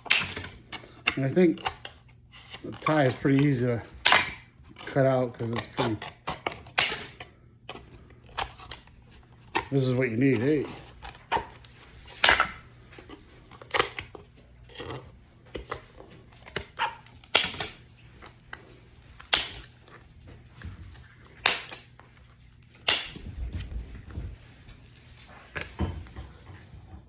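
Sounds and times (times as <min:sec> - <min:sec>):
loud plastic cracks: 0:00.0 - 0:02.0, 0:04.0 - 0:04.5, 0:05.4 - 0:07.2, 0:16.5 - 0:17.8, 0:19.2 - 0:19.7, 0:21.4 - 0:21.9, 0:22.8 - 0:23.4
plastic parts snapping: 0:00.0 - 0:09.8, 0:11.0 - 0:18.3, 0:19.2 - 0:20.0, 0:21.4 - 0:22.0, 0:22.8 - 0:23.3.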